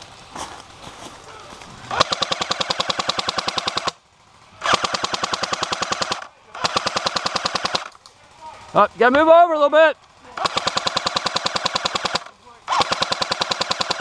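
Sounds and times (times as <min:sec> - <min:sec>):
airsoft gun full-auto bursts: 0:01.9 - 0:04.0, 0:04.6 - 0:08.0, 0:08.7 - 0:14.0.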